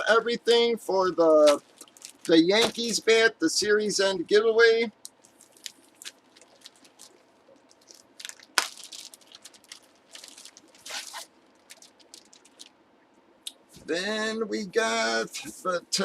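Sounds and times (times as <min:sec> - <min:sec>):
cards and plastic packaging rustling: 0:01.0 - 0:03.2, 0:05.0 - 0:12.8.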